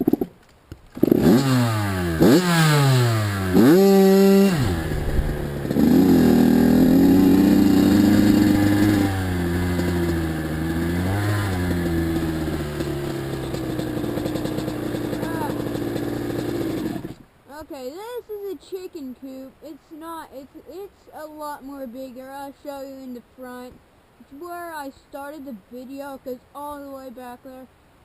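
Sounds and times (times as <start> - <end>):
dirt bike engine revving: 1.0 - 17.2.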